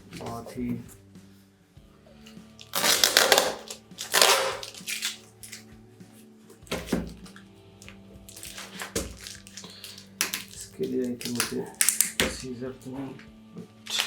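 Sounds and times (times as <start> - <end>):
plastic packaging crinkling: 2.6 - 5.6, 8.3 - 12.2.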